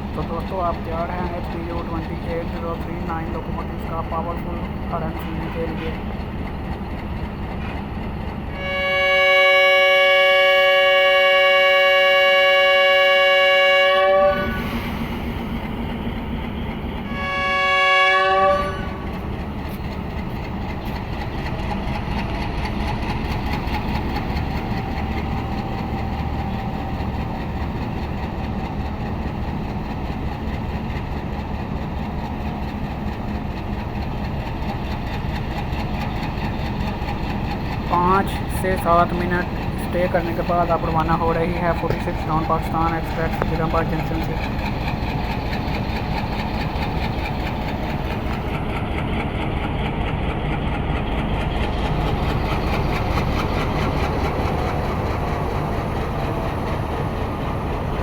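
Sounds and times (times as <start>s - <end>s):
idling locomotive rumble: 0.0s - 58.0s
locomotive air horn blasts: 8.5s - 14.8s, 17.1s - 19.1s.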